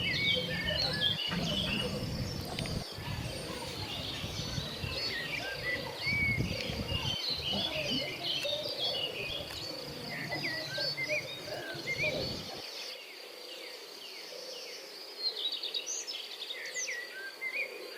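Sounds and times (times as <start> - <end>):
low rumbling noise: 0.0 - 5.2
birds chirping: 0.0 - 17.9.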